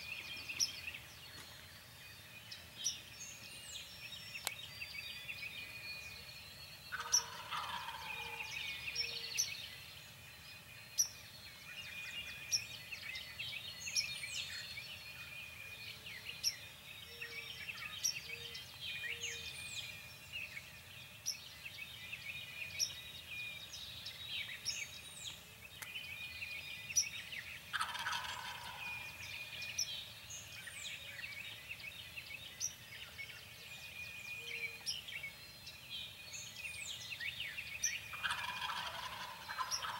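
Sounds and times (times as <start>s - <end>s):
songbirds chirping: 0.0s - 39.9s
turkey gobbling: 7.0s - 8.4s, 27.7s - 28.8s, 38.1s - 39.9s.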